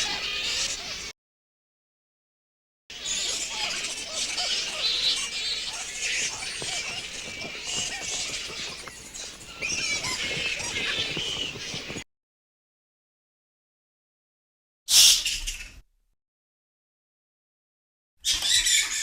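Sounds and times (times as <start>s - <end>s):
flying foxes screeching: 0.0s - 1.1s, 3.0s - 12.0s.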